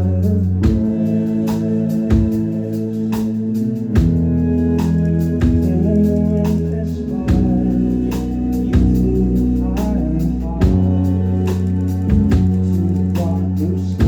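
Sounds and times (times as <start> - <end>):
bass guitar: 0.0 - 14.0
organ-like keyboard chords: 0.0 - 14.0
drum hits: 11.6 - 13.3.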